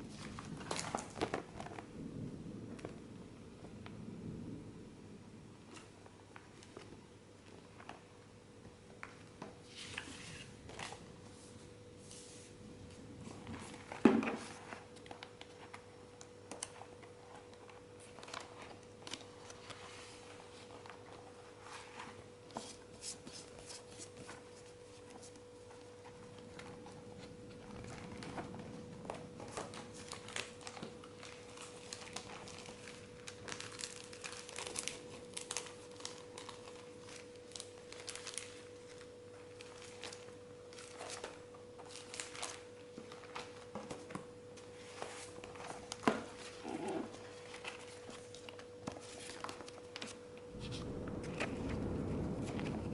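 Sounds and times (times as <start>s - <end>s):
faint steady hum: 0.0s - 52.9s
card packaging crinkling: 22.7s - 52.9s.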